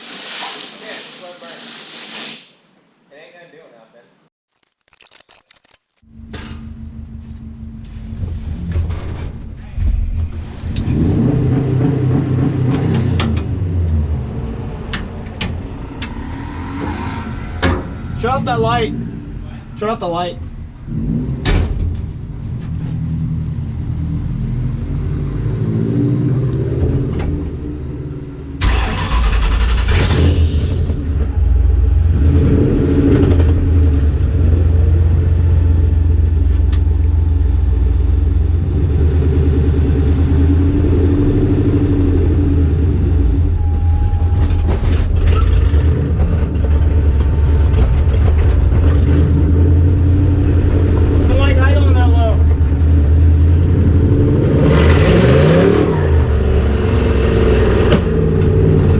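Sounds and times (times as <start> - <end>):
engine cranking and starting: 28.6 - 31.0.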